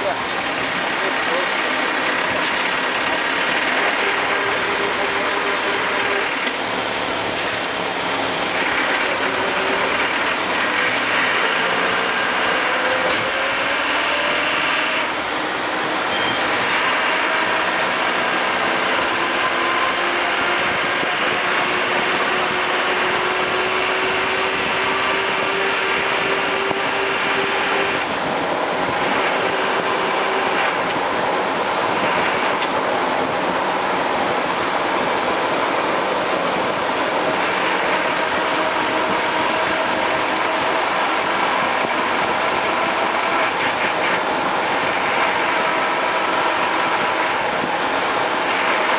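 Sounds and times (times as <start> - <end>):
whining tone: 0.0 - 33.3, 34.5 - 48.9
vehicle drivetrain and road noise: 0.0 - 48.9.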